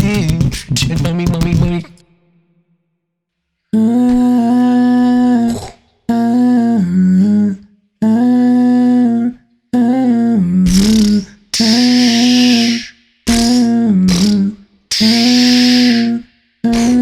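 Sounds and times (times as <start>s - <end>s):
man humming through autotune: 0.0s - 2.1s, 9.9s - 17.0s
hissing breath: 10.7s - 17.0s.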